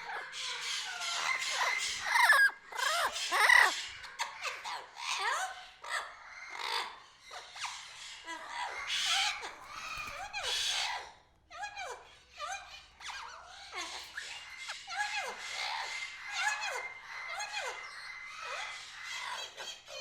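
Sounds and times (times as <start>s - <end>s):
aviary birds calling: 0.0s - 20.0s.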